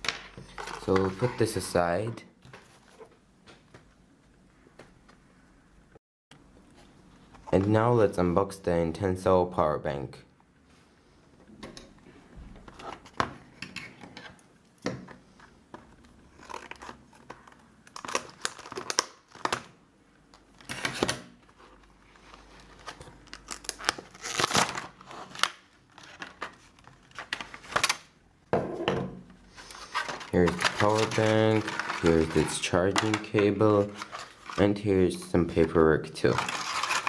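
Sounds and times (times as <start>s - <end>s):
packaging crinkling and tearing: 16.0s - 28.2s, 29.6s - 37.0s.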